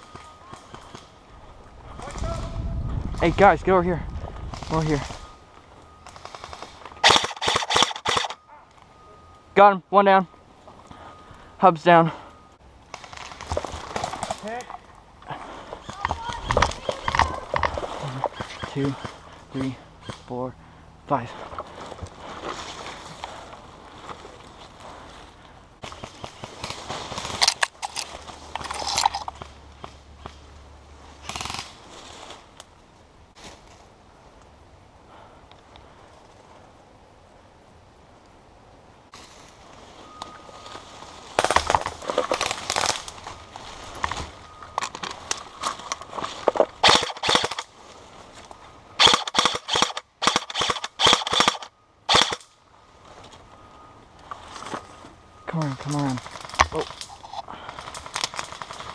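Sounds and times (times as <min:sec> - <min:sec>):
airsoft gun firing: 0:06.2 - 0:08.4, 0:46.8 - 0:47.6, 0:49.0 - 0:52.4
twigs cracking: 0:12.9 - 0:14.9, 0:15.7 - 0:19.3, 0:25.4 - 0:30.4, 0:40.2 - 0:52.5, 0:55.5 - 0:58.9
footsteps through dry leaves: 0:21.6 - 0:27.4, 0:39.1 - 0:44.5.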